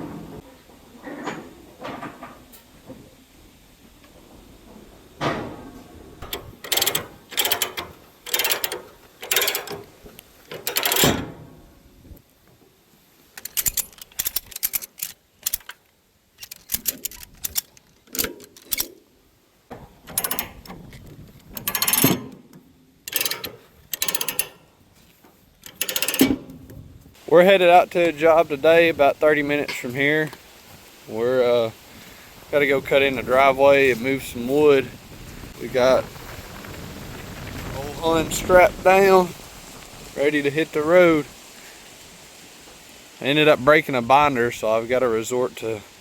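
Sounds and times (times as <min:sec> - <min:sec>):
metal clanks: 0:04.0 - 0:11.8, 0:16.4 - 0:19.0, 0:19.7 - 0:26.9
ratcheting clicks: 0:06.2 - 0:11.2, 0:13.4 - 0:18.9, 0:20.1 - 0:22.4, 0:23.0 - 0:24.7, 0:25.6 - 0:26.8.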